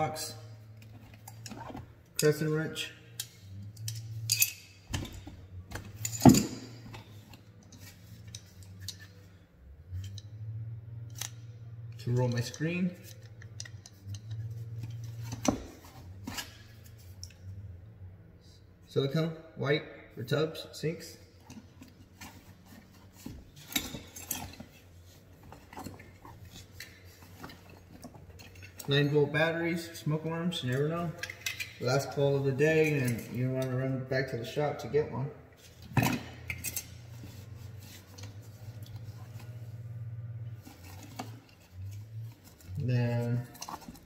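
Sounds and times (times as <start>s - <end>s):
metal hand tools clinking: 3.1s - 5.2s, 30.6s - 32.2s.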